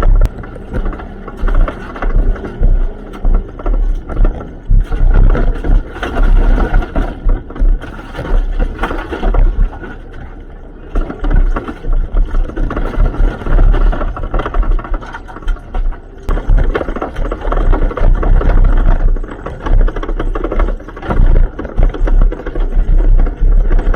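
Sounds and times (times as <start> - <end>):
road noise: 0.0 - 7.6
car engine running: 0.0 - 23.9
heavy thumps and rattles: 0.0 - 23.9.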